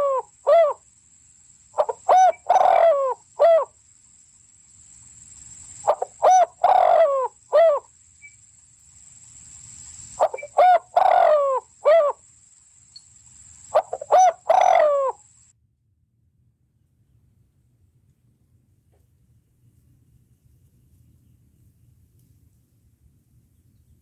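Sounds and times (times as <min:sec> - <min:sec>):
fowl calling: 0:05.8 - 0:07.9, 0:10.2 - 0:12.2, 0:13.7 - 0:15.2.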